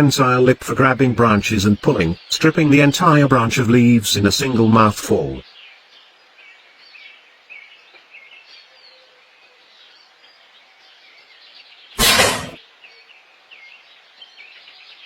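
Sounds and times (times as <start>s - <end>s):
small birds chirping: 0.0s - 15.0s
faint outdoor hush: 12.0s - 12.6s
loud brief burst of noise: 12.0s - 12.6s.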